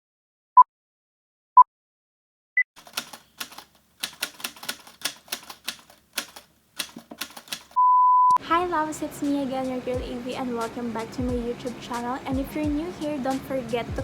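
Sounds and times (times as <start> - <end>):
typewriter keys clacking: 2.8 - 7.8
short electronic beep: 7.8 - 8.4.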